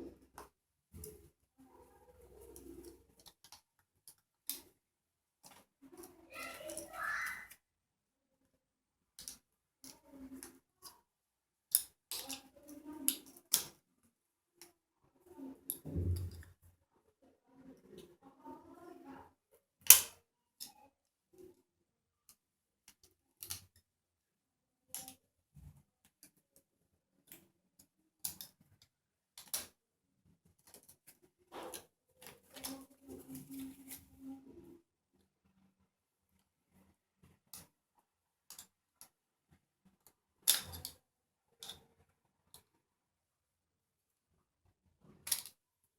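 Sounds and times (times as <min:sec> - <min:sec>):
sharp clicks and knocks of parts: 0:28.2 - 0:29.8, 0:40.4 - 0:41.0.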